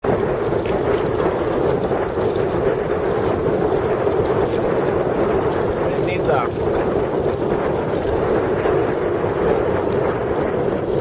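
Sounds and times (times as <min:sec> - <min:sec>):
boat rushing through water: 0:00.0 - 0:11.0.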